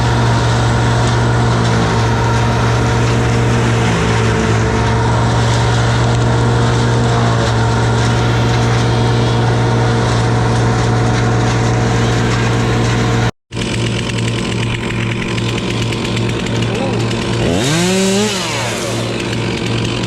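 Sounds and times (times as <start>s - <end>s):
engine humming steadily: 0.0s - 20.0s.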